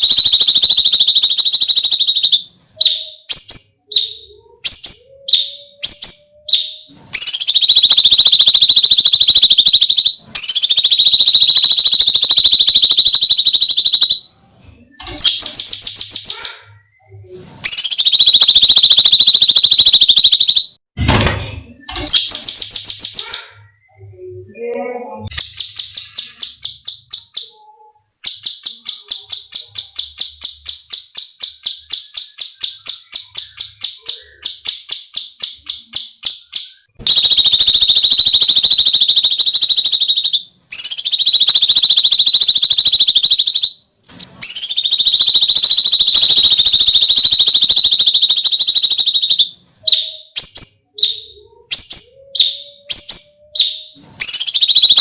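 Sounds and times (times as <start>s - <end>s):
brief thump: 21.0s - 21.7s.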